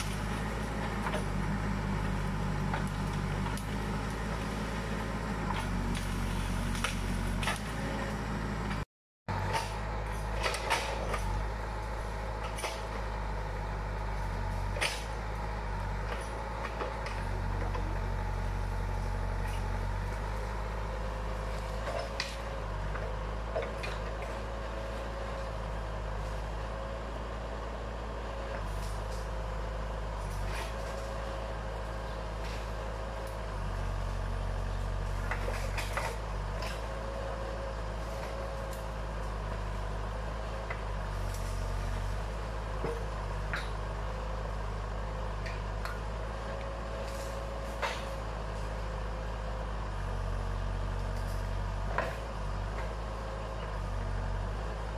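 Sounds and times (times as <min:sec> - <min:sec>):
diesel engine running: 0:00.0 - 0:54.9.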